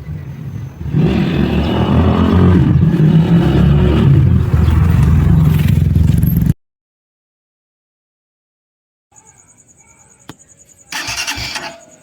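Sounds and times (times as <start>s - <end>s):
motorcycle engine revving: 0.0s - 6.6s, 10.9s - 12.0s.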